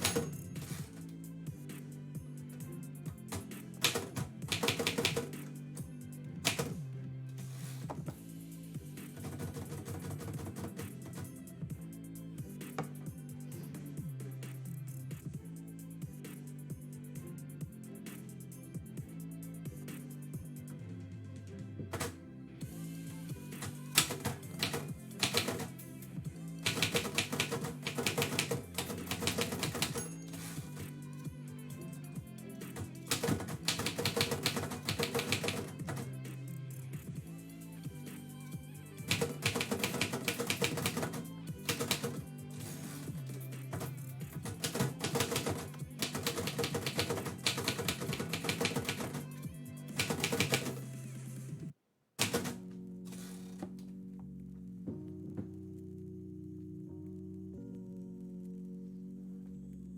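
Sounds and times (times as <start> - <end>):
background music: 0.0 - 59.9
typewriter keys striking: 3.3 - 5.3, 23.6 - 25.8, 26.7 - 30.8, 32.7 - 36.1, 39.1 - 43.1, 43.7 - 49.3, 49.9 - 50.8, 52.2 - 52.6.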